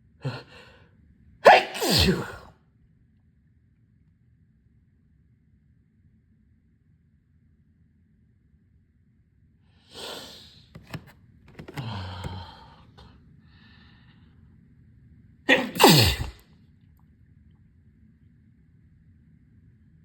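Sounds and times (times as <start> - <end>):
breathy gasp: 0.2 - 0.9, 11.6 - 14.2
person sneezing: 1.4 - 2.5, 9.9 - 10.6, 15.5 - 16.4.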